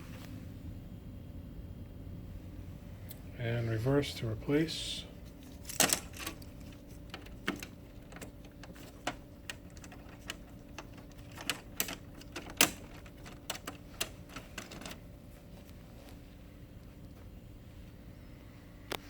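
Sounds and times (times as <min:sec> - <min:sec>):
plastic printer parts clicking: 0:05.7 - 0:15.0.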